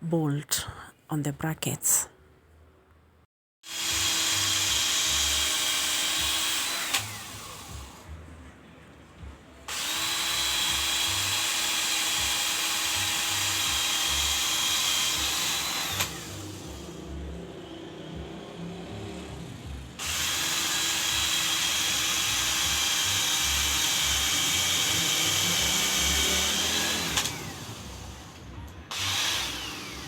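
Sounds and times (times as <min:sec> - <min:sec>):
power drill running: 0:03.6 - 0:08.0, 0:09.7 - 0:17.0, 0:20.0 - 0:30.0
drill click: 0:20.0 - 0:27.6, 0:28.9 - 0:30.0.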